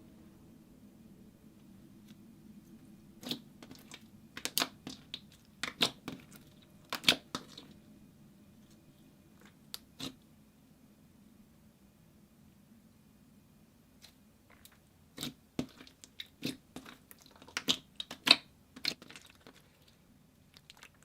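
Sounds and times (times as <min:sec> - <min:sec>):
slime clicking and popping: 0:03.2 - 0:06.3, 0:06.9 - 0:07.6, 0:15.2 - 0:19.5.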